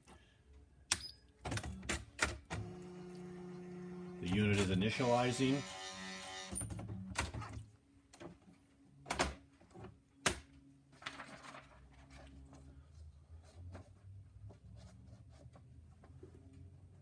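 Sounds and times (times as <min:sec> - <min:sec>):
typewriter mechanism clicks and clunks: 0:04.3 - 0:04.9.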